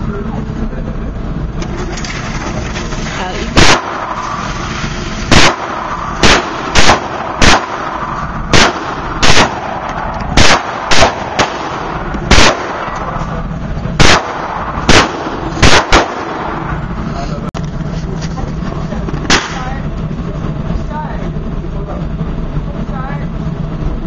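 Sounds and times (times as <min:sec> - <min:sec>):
steady background noise: 0:00.0 - 0:24.0
loud sharp gunshots: 0:03.4 - 0:16.9, 0:19.2 - 0:19.8.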